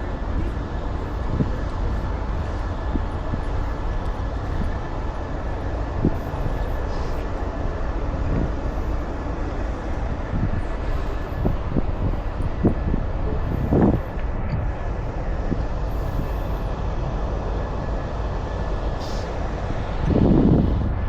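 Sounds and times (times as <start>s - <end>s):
low rumble of traffic: 0.0s - 21.0s.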